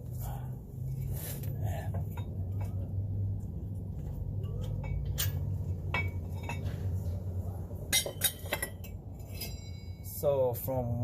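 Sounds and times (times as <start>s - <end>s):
steady low hum: 0.0s - 11.0s
metallic clinks of tools: 7.9s - 10.2s.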